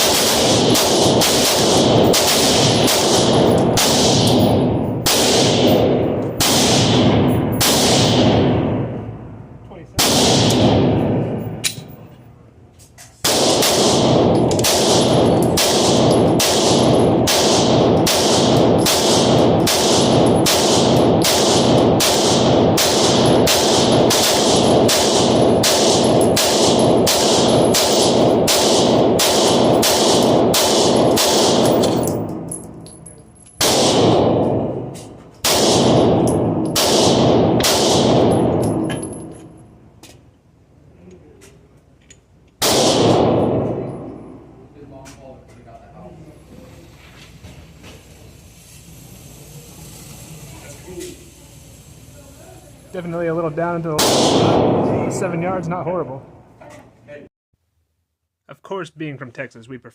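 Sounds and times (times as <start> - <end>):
pistol shots: 0.0 - 8.9, 10.0 - 11.9, 13.2 - 32.5, 33.6 - 39.0, 42.6 - 44.1, 54.0 - 55.2.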